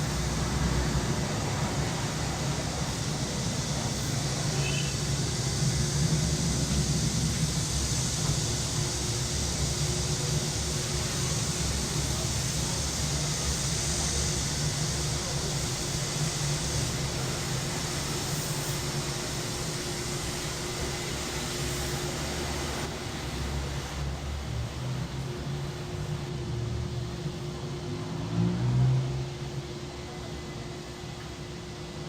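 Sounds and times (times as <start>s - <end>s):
cicada chorus: 0.0s - 23.2s
low traffic rumble: 0.0s - 32.0s.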